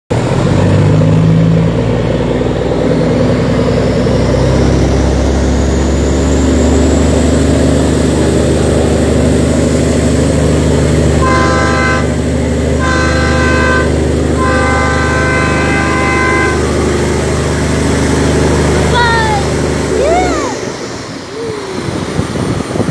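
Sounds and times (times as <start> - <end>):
diesel boat engine running: 0.1 - 22.9
boat horn blasts: 11.0 - 20.7.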